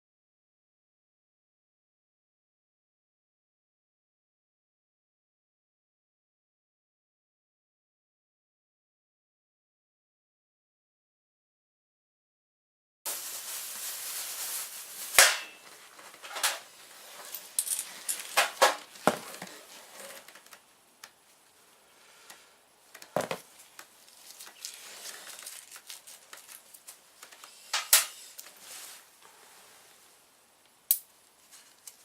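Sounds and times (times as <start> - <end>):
steady hiss: 13.1 - 32.0
hand tools and metal parts clinking: 15.1 - 20.6, 23.0 - 28.6.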